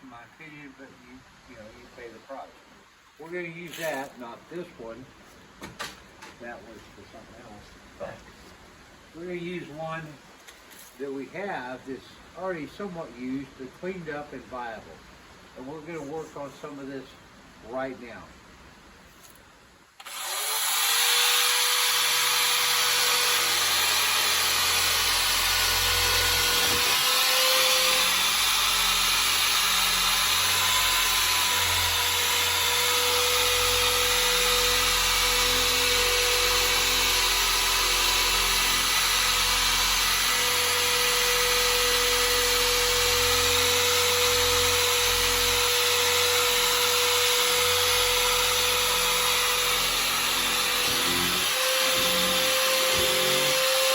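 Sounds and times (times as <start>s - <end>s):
power drill motor whine: 20.0s - 53.9s.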